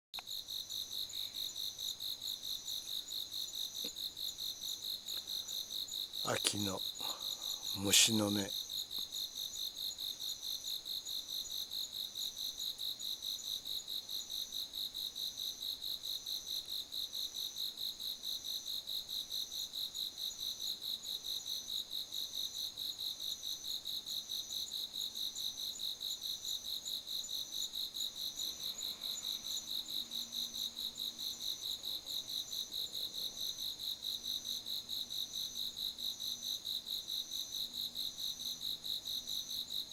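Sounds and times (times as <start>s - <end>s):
crickets trilling: 0.6s - 8.8s.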